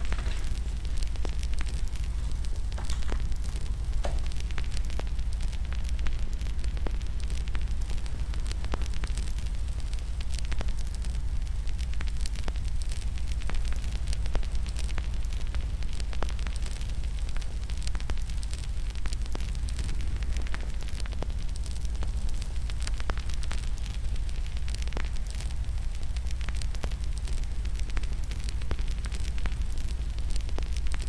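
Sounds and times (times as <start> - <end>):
sharp pops and snaps: 0.0 - 11.1
wood fire crackling: 0.0 - 31.0.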